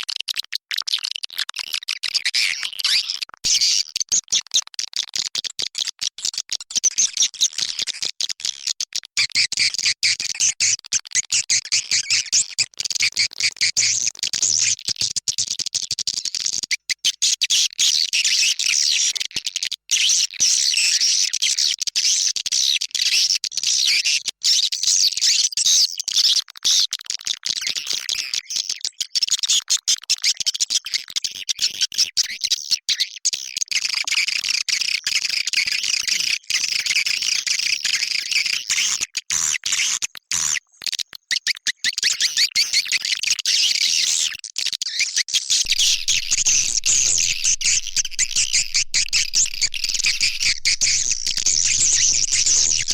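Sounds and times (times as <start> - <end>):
swiftlet twittering chirps: 45.7 - 52.9.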